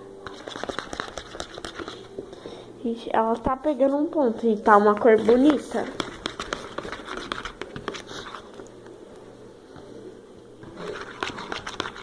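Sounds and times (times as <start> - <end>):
slime stirred with sticky clicks: 0.2 - 2.1, 4.9 - 8.8, 10.7 - 12.0.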